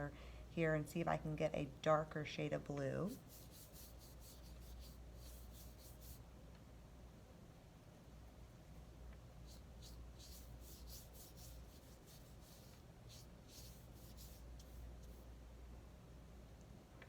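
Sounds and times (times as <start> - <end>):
low steady hum: 0.0 - 17.0
paintbrush brushing across paper: 3.1 - 6.2, 9.4 - 15.3.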